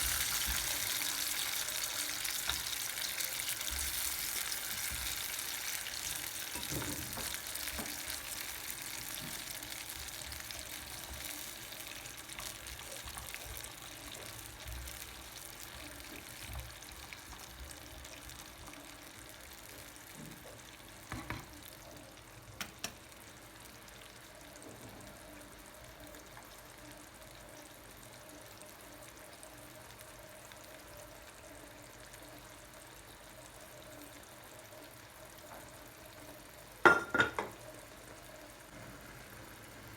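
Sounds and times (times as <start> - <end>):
food sizzling in a frying pan: 0.0 - 39.9
utensil clicking against pan: 22.6 - 23.0.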